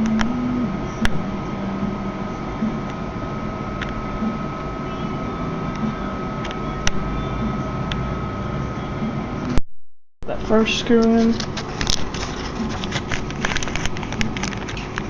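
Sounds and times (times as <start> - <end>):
faint whine: 0.0 - 9.6.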